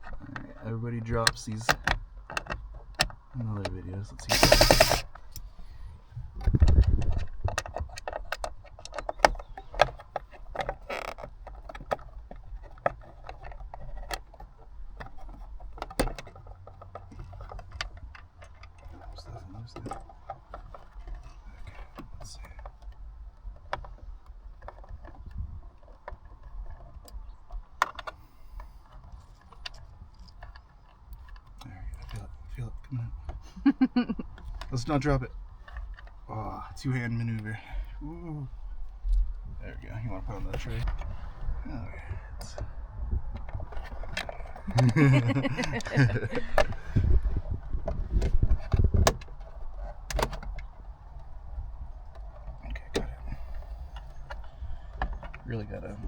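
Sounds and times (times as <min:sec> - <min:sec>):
sharp plastic clicks and knocks: 0:00.0 - 0:05.5, 0:06.4 - 0:32.2, 0:43.3 - 0:51.2
hand tool clicking on plastic trim: 0:04.2 - 0:05.5
hands bumping and rubbing trim: 0:43.7 - 0:50.7.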